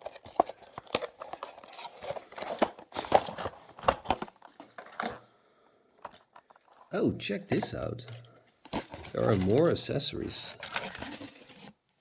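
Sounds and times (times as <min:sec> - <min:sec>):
plastic packaging crinkling: 0:00.0 - 0:05.2, 0:08.6 - 0:11.8.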